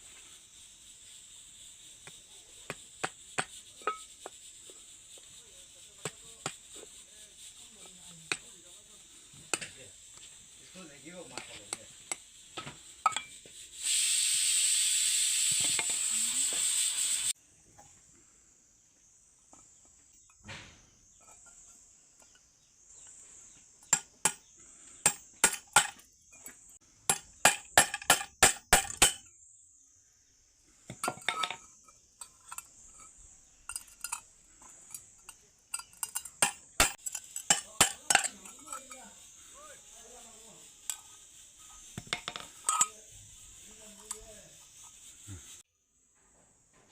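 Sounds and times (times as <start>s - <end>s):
high-pitched hiss: 0.0s - 46.0s
hard objects clinking: 30.9s - 39.4s, 40.6s - 43.3s.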